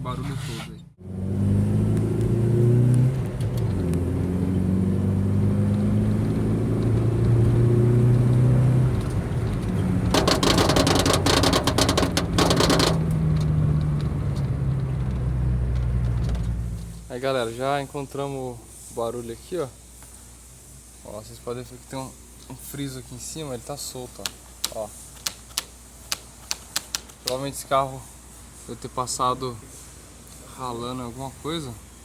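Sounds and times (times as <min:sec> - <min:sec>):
car driving hum: 0:00.0 - 0:17.6.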